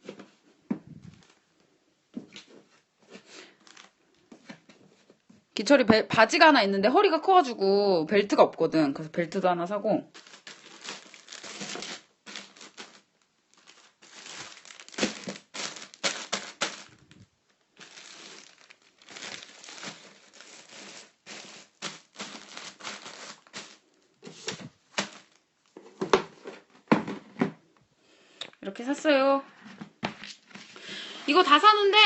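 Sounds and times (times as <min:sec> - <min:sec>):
packaging crinkling and rustling: 0:02.3 - 0:04.8, 0:10.1 - 0:27.2.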